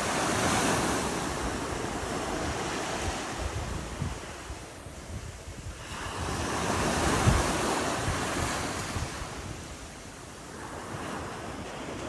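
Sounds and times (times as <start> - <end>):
waves breaking on beach: 0.0 - 5.1
wind buffeting microphone: 0.0 - 10.0.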